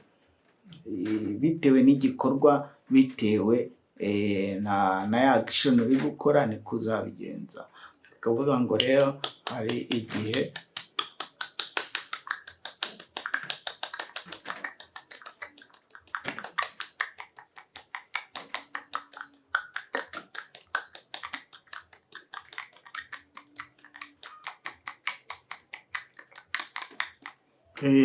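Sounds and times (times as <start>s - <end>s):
wet mouth smacks and kissing clicks: 8.8s - 27.4s.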